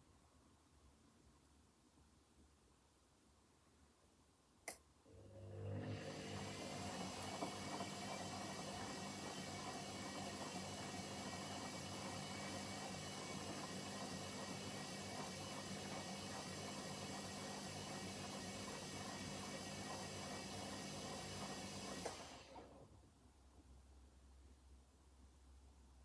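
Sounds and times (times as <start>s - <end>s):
washing machine whirring: 5.1s - 22.9s.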